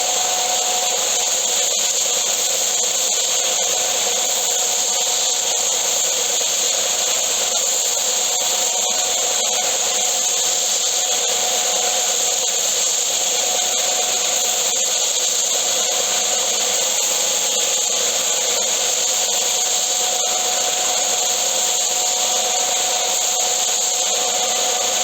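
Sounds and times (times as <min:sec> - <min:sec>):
belt sander running: 0:19.5 - 0:25.0.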